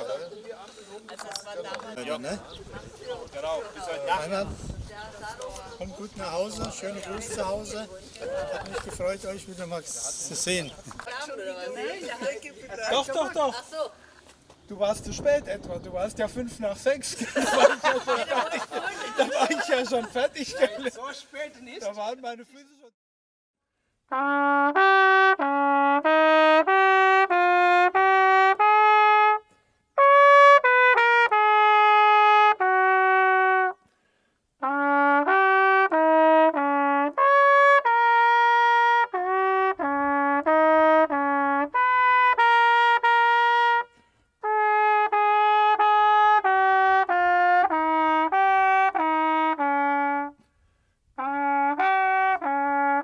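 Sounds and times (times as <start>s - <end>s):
solo trumpet melody: 24.1s - 50.5s, 51.1s - 53.0s.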